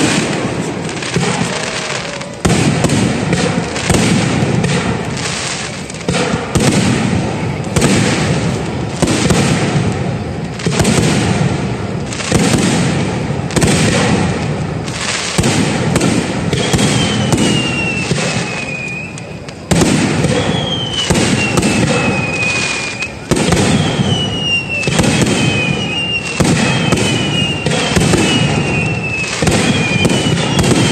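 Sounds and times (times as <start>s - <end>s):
fireworks booming and crackling: 0.0s - 30.9s
descending whistling tone: 16.5s - 19.4s, 20.4s - 30.9s.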